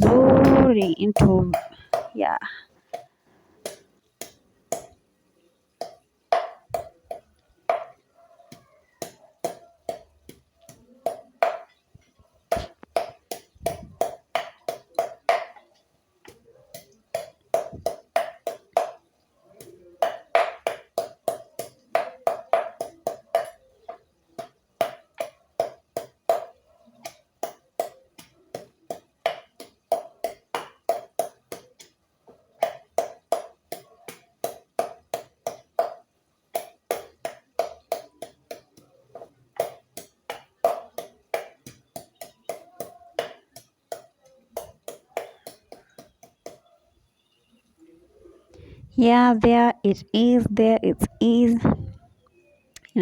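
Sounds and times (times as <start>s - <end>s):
garlic being pounded: 5.8s - 11.8s, 12.5s - 15.6s, 16.3s - 32.0s, 32.6s - 46.7s.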